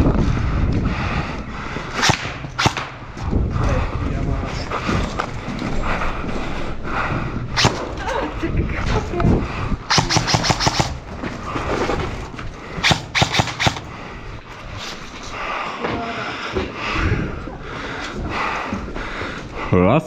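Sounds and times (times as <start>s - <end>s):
airsoft guns firing: 1.9s - 3.3s, 7.6s - 8.1s, 9.9s - 12.0s, 12.6s - 14.4s.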